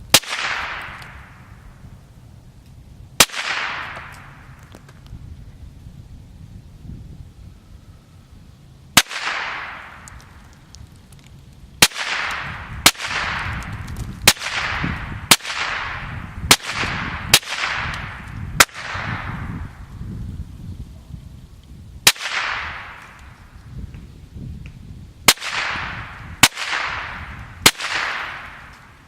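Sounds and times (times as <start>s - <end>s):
rifle shots echoing: 0.1s - 1.4s, 3.2s - 4.5s, 9.0s - 10.4s, 11.8s - 19.5s, 22.1s - 23.2s, 25.3s - 28.9s.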